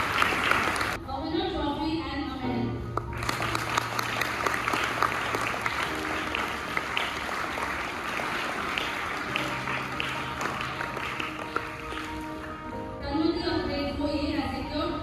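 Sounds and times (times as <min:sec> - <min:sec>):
audience applause: 0:00.0 - 0:01.0, 0:03.1 - 0:12.7
soft background music: 0:00.0 - 0:15.0.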